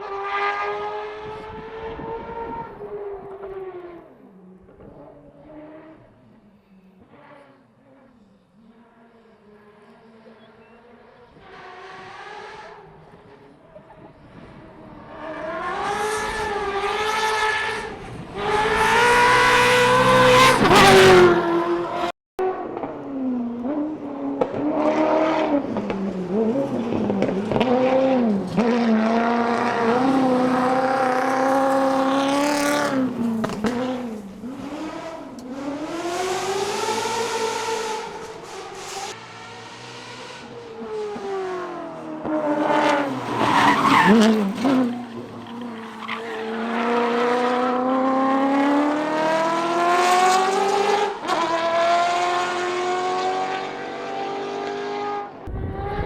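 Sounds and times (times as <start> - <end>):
rally car engine revving past: 14.4 - 56.0.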